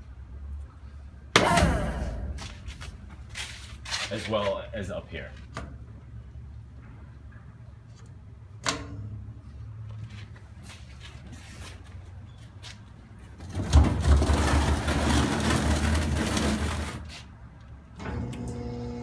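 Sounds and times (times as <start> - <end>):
steady hum with tone: 0.0 - 4.0.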